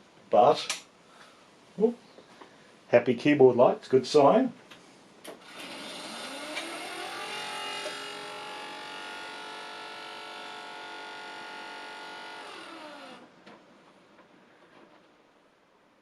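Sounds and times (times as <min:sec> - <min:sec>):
cooling fans whirring: 0:05.2 - 0:14.8.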